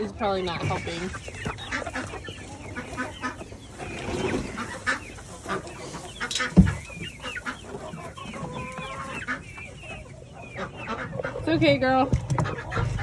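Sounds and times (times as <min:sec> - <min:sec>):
hens clucking: 0:00.0 - 0:13.0.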